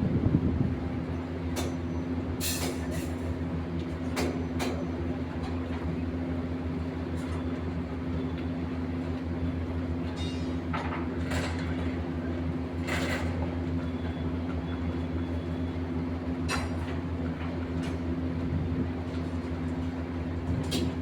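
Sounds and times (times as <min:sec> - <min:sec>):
low machine drone: 0:00.0 - 0:02.4.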